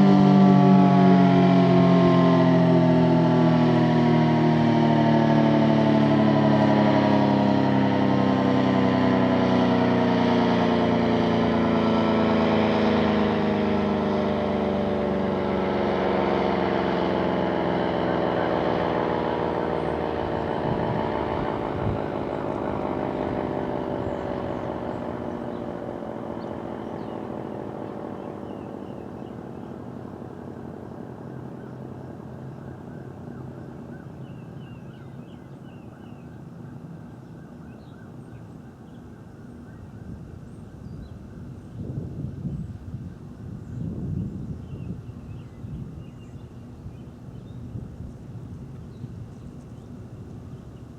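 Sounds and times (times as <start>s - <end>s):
mechanical siren winding down: 0.0s - 35.2s
faint bird chirps: 32.5s - 41.5s.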